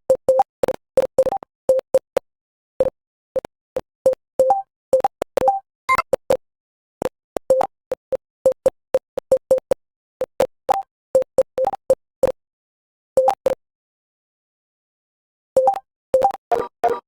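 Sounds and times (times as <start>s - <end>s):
keystroke beeps: 5.4s - 6.1s, 15.6s - 17.0s.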